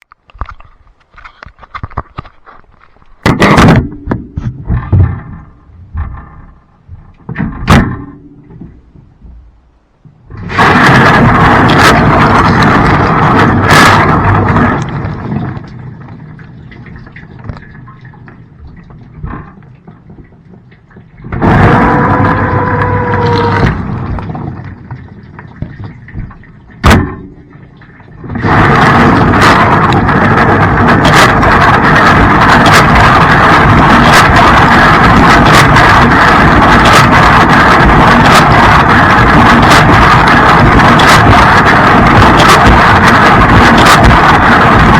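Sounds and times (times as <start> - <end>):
pump motor whine: 21.3 - 24.9.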